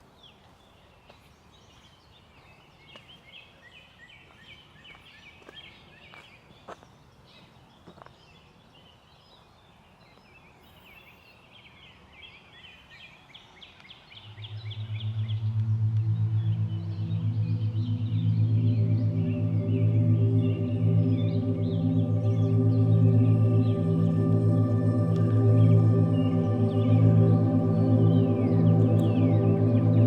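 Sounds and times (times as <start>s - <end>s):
low music tones: 14.2s - 30.0s
birds chattering: 16.1s - 30.0s.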